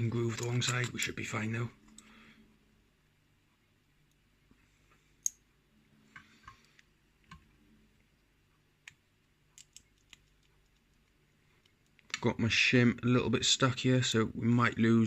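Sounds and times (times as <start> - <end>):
lock parts clicking: 9.6 - 11.0.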